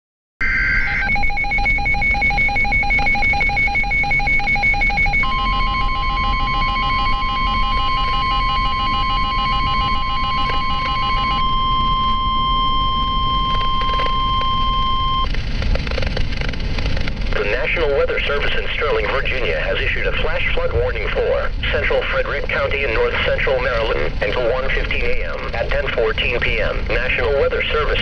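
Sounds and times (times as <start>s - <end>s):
two-pitch data tones: 0.4s - 15.3s
steady warning alarm tone: 0.4s - 15.4s
rapid electronic beeping: 0.4s - 28.0s.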